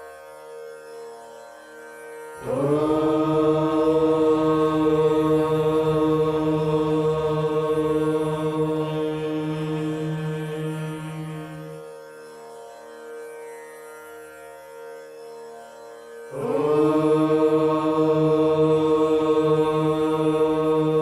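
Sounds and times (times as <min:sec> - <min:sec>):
long chanted note: 0:02.3 - 0:12.8, 0:16.3 - 0:21.0.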